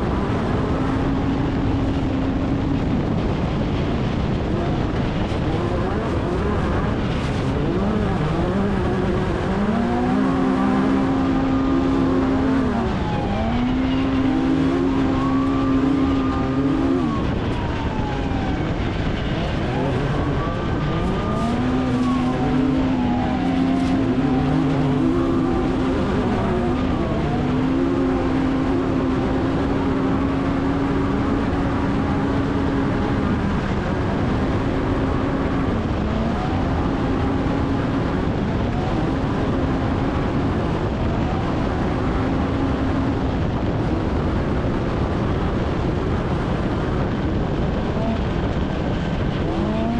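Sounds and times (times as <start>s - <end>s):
rough terrain noise: 0.0s - 49.9s
wind rumble: 0.0s - 49.9s
race vehicle engine revving: 4.0s - 44.6s, 47.6s - 49.9s.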